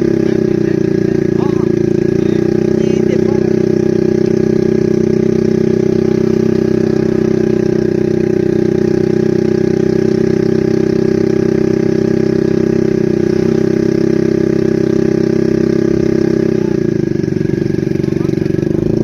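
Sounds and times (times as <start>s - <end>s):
engine droning steadily: 0.0s - 19.0s.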